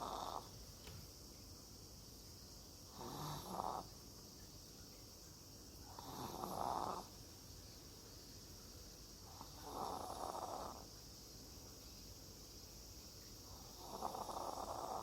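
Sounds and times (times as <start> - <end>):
dog snoring: 0.0 - 0.5, 2.9 - 3.9, 5.9 - 7.1, 9.3 - 10.9, 13.6 - 15.0.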